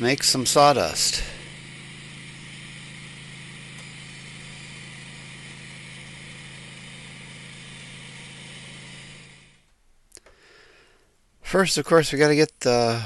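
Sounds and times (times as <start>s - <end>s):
sawmill machine drone: 0.0s - 9.7s.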